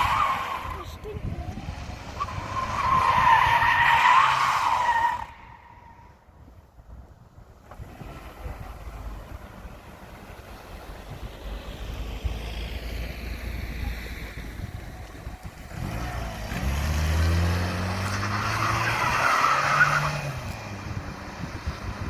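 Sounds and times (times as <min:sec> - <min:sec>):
car engine accelerating: 0:07.6 - 0:22.0.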